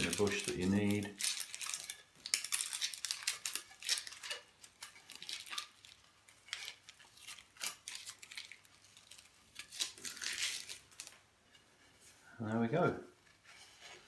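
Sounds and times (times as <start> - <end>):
tape crackling as peeled off: 0.0 - 11.6.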